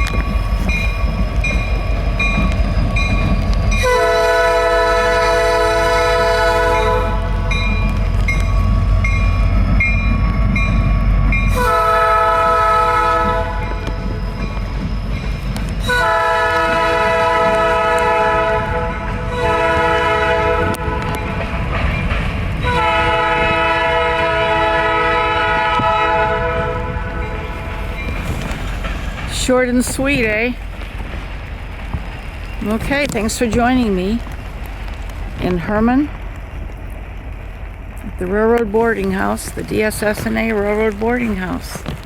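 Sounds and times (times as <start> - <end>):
locomotive bell ringing: 0.0 - 17.6
locomotive engines rumbling: 0.0 - 42.0
train air horn blasts: 3.7 - 7.6, 11.5 - 14.2, 15.8 - 21.2, 22.6 - 27.8.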